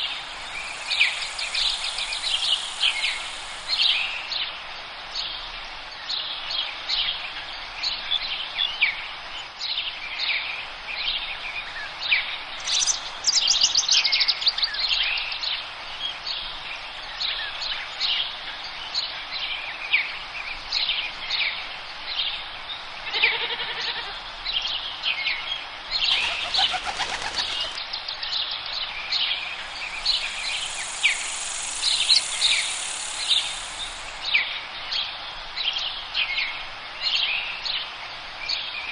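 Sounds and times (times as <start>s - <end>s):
songbirds chirping and singing: 25.9s - 34.4s.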